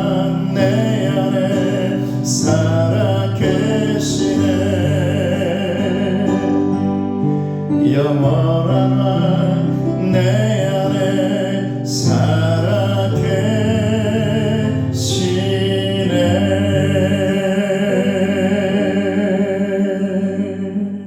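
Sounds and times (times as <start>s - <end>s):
person singing with vibrato: 0.0s - 21.0s
sustained accompaniment: 0.0s - 21.0s.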